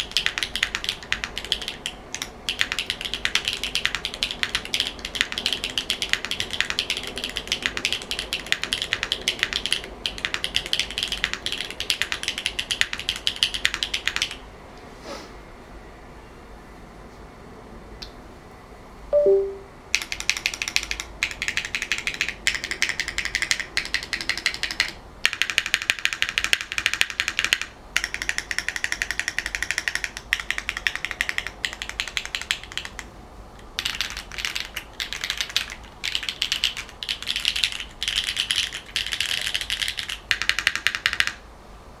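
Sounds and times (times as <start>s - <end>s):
fast typing on mechanical keyboard: 0.0s - 14.4s, 20.0s - 41.4s
low two-note falling tone: 19.2s - 19.7s.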